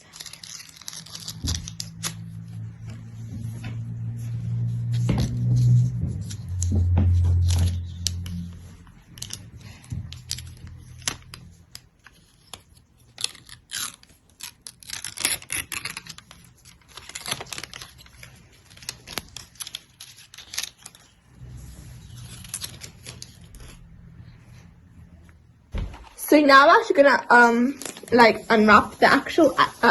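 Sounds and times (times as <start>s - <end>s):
packaging crackling and tearing: 0.0s - 2.4s, 7.3s - 24.0s, 27.7s - 29.1s
low hum: 1.0s - 12.1s, 21.3s - 26.3s.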